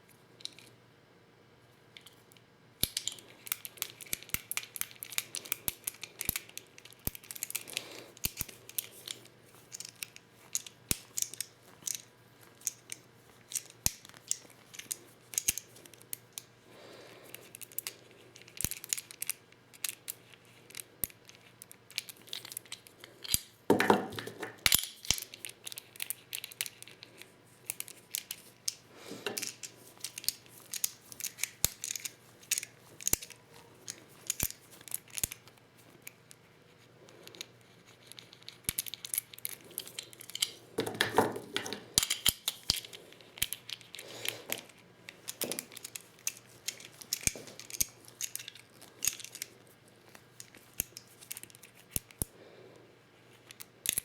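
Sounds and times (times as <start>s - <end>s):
plastic hulls and tools clicking: 17.4s - 36.4s, 37.2s - 52.3s.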